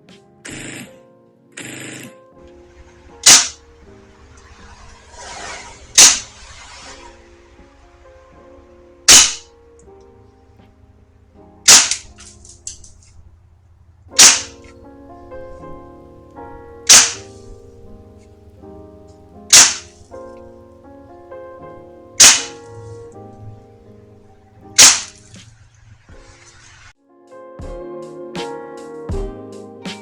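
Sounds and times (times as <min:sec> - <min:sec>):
background music: 0:00.0 - 0:13.1, 0:14.2 - 0:25.6, 0:26.2 - 0:30.0
airsoft gun shots cracking: 0:03.0 - 0:07.3, 0:09.1 - 0:09.5, 0:11.6 - 0:13.2, 0:14.2 - 0:15.7, 0:16.8 - 0:18.4, 0:19.5 - 0:20.1, 0:22.2 - 0:23.1, 0:24.7 - 0:25.6.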